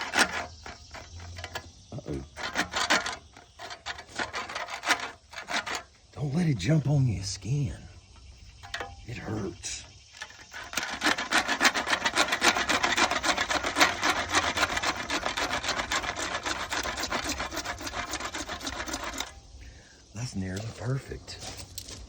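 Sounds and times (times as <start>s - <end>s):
handsaw cutting through pipe: 0.0s - 1.1s, 2.3s - 5.9s, 10.4s - 19.4s.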